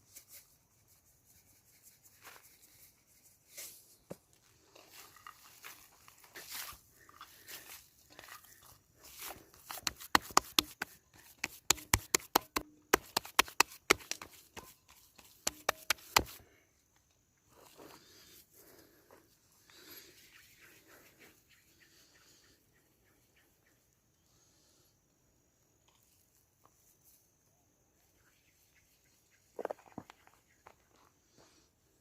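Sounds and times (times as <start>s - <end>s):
faint rustling and scraping: 0.0s - 16.6s, 17.4s - 21.6s.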